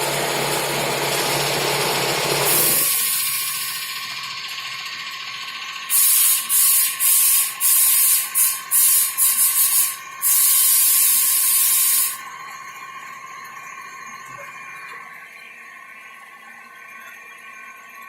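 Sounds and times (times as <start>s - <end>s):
high machine whine: 0.0s - 18.0s
loud hissing spray bursts: 2.5s - 3.8s, 5.9s - 12.2s.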